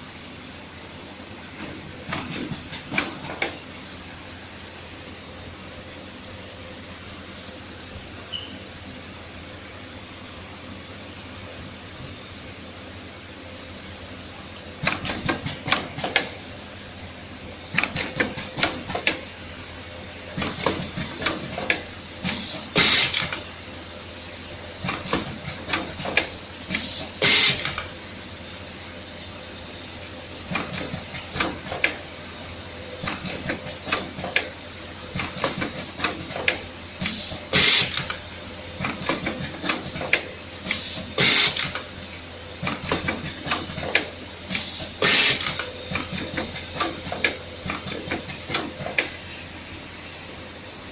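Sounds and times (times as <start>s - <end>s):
mechanical clicking and clattering: 14.8s - 16.4s, 20.4s - 23.5s, 33.0s - 41.9s, 42.6s - 49.2s
short hiss: 22.3s - 23.2s, 26.7s - 27.6s, 40.7s - 41.6s, 44.5s - 45.5s.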